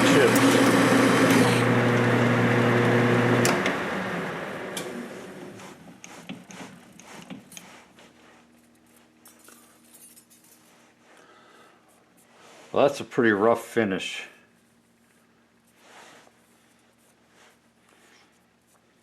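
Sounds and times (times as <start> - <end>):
metal lathe motor humming: 0.0 - 5.4.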